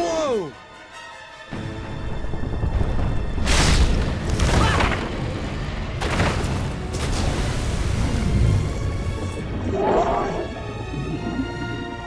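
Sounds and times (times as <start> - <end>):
orchestral score: 0.0 - 12.0
loud booming blasts: 2.0 - 9.8.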